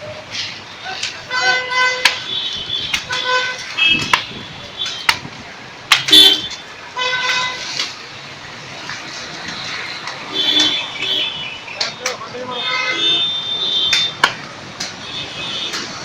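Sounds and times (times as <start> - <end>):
vehicle horn toots: 1.3 - 5.0, 6.0 - 7.6, 12.6 - 14.2.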